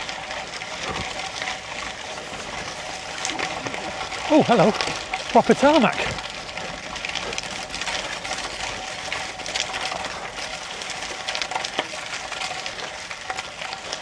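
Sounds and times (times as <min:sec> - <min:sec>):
bicycle tyres hissing on wet tarmac: 0:00.0 - 0:14.0
pouring rain: 0:00.0 - 0:14.0.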